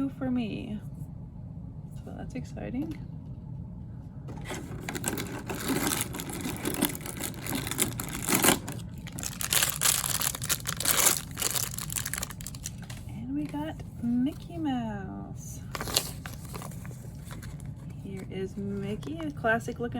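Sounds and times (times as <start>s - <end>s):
plastic bag crinkling and tearing: 4.5s - 13.1s.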